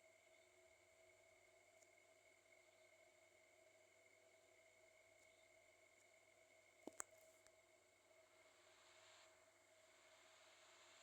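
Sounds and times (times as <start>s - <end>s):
thin constant tones: 0.0s - 11.0s
faint hiss: 5.4s - 11.0s.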